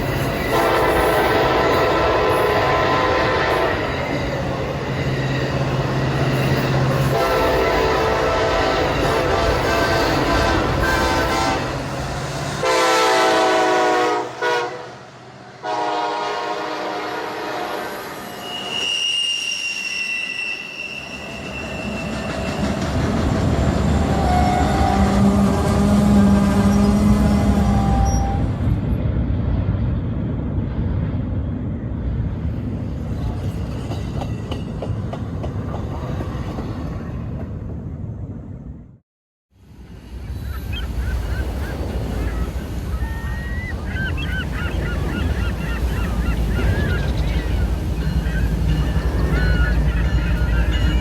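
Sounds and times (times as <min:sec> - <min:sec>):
high wheel squeal: 0:00.0 - 0:12.1, 0:17.7 - 0:23.2, 0:23.8 - 0:25.4, 0:40.2 - 0:51.0
passing train rumble: 0:00.0 - 0:39.0, 0:39.6 - 0:51.0
train horn blasts: 0:00.4 - 0:04.1, 0:06.8 - 0:19.4, 0:24.0 - 0:28.6.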